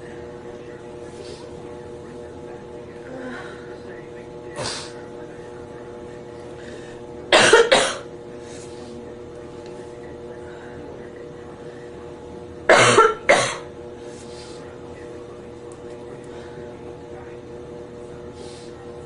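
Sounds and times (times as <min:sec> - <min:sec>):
faint breaths: 0:06.4 - 0:07.2, 0:08.3 - 0:12.0, 0:14.0 - 0:14.8, 0:16.2 - 0:16.8, 0:18.2 - 0:18.9
man coughing: 0:07.3 - 0:08.1, 0:12.7 - 0:13.7.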